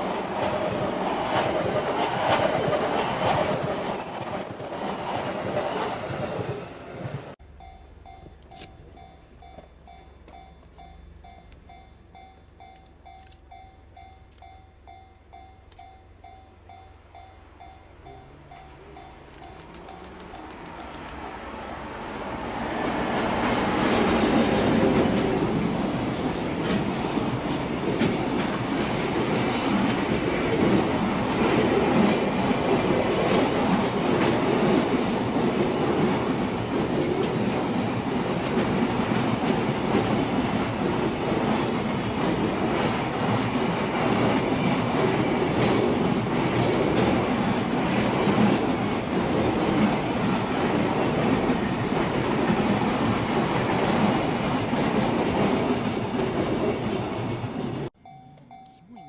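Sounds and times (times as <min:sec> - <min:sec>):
train wheels rumbling on rails: 0:00.0 - 0:58.0.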